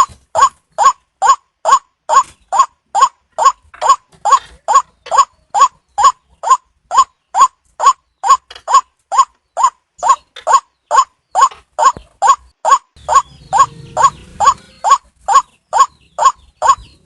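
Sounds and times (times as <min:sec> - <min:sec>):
waterhen calling: 0:00.0 - 0:17.0.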